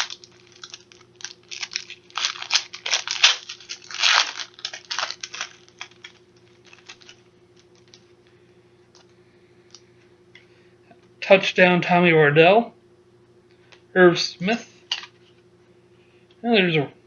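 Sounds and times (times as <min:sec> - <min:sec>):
wrapper tearing and crinkling: 0:00.0 - 0:08.0.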